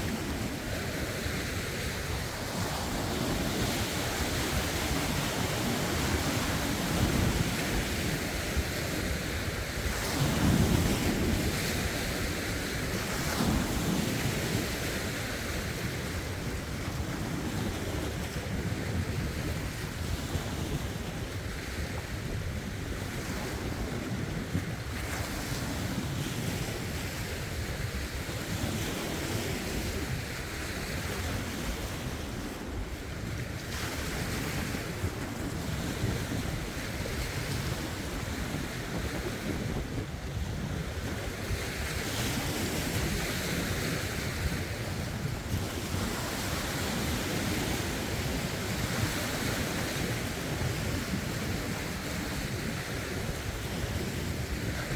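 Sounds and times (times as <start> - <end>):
waves lapping over rocks: 0.0 - 54.9
wind buffeting microphone: 0.0 - 54.9.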